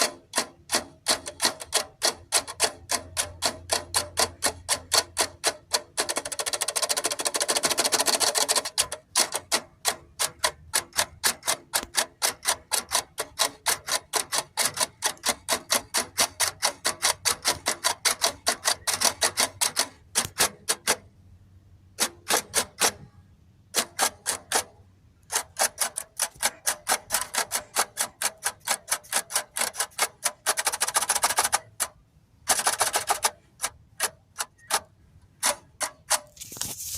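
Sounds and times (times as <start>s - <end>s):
sharp evenly spaced clicks: 0.0s - 21.1s, 23.7s - 36.4s.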